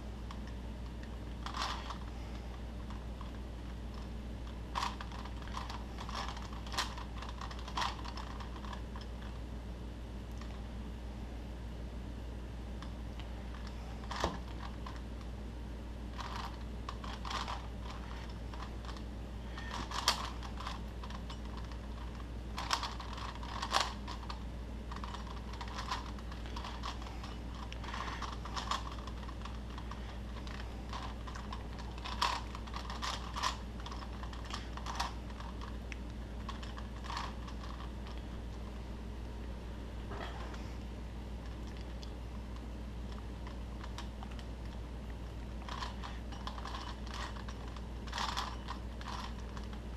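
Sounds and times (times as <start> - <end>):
steady low hum: 0.0 - 49.9.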